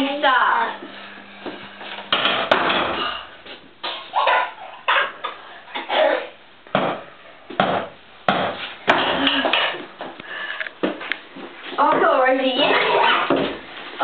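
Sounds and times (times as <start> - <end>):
hammer banging: 2.1 - 3.2.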